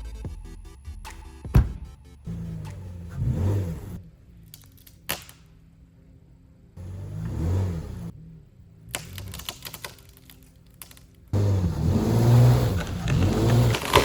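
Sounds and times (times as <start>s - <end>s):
electric chainsaw motor: 11.4s - 14.0s.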